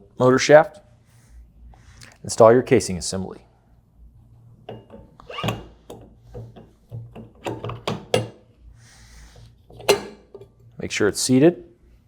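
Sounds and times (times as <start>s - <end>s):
metal pump parts clinking: 4.6s - 8.5s, 9.7s - 10.7s.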